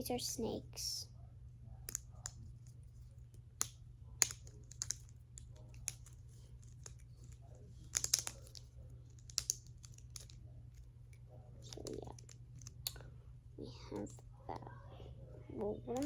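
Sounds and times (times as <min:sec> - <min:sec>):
plastic fidget toys clicking: 0:03.6 - 0:10.4, 0:11.6 - 0:13.0.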